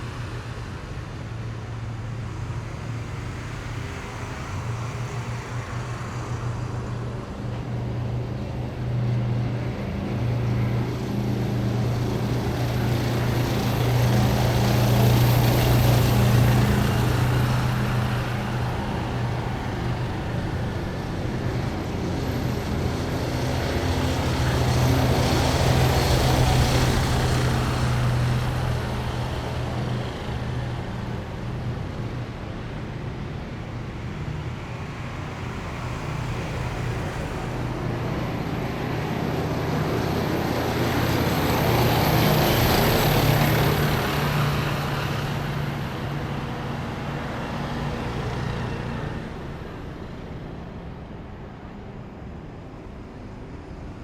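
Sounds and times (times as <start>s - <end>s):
heavy vehicle engines droning: 0.0s - 54.0s.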